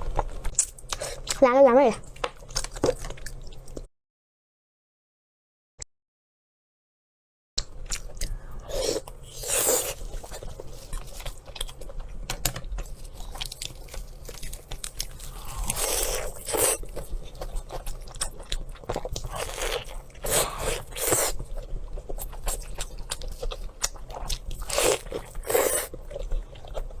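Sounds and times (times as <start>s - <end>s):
person chewing crunchy food: 2.1s - 3.9s, 7.6s - 27.0s.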